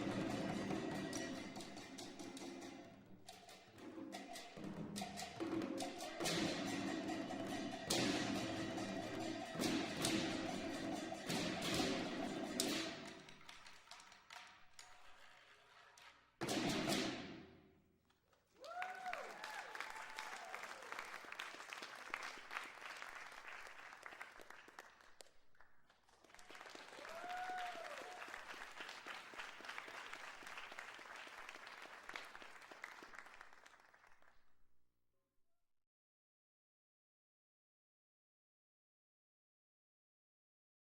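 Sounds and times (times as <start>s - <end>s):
drums gongs and cymbals: 0.0s - 13.1s, 16.4s - 17.3s
whooping cheers: 18.6s - 21.3s, 26.7s - 28.8s
audience applause: 18.6s - 25.3s, 26.1s - 34.3s.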